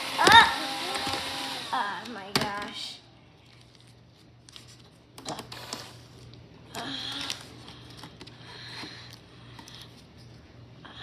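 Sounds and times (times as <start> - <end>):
robot vacuum humming: 0.0 - 2.1.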